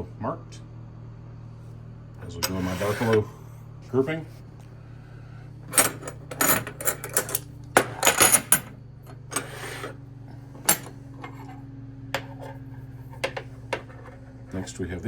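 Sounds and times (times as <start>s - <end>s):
steady low hum: 0.0s - 15.0s
wrench scraping: 2.2s - 3.3s.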